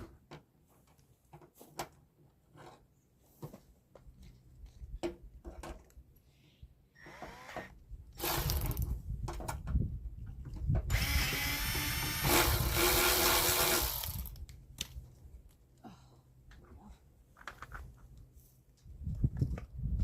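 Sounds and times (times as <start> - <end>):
power drill drilling: 7.0 - 8.8, 10.9 - 14.3.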